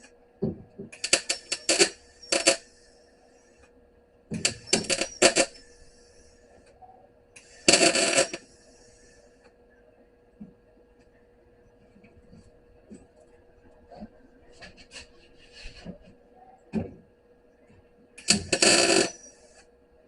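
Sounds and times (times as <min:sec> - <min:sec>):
faint steady hum: 0:00.0 - 0:20.0
welder arc crackle: 0:01.0 - 0:02.9, 0:04.4 - 0:06.3, 0:07.4 - 0:09.2, 0:18.2 - 0:19.7.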